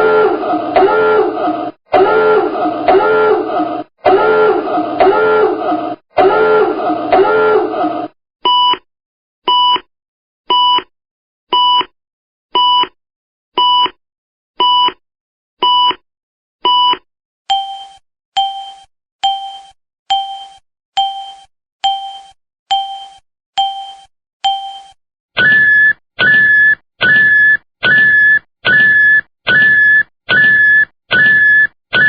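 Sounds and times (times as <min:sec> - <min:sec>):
steady electronic beep: 0:17.5 - 0:25.9.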